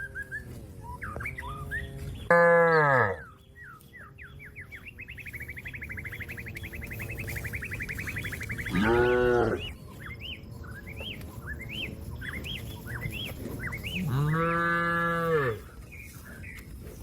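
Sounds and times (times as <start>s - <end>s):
small birds chirping: 0.0s - 2.4s, 3.0s - 17.0s
cow mooing: 2.3s - 3.2s, 8.6s - 9.6s, 13.9s - 15.6s
bird trilling: 4.8s - 9.8s.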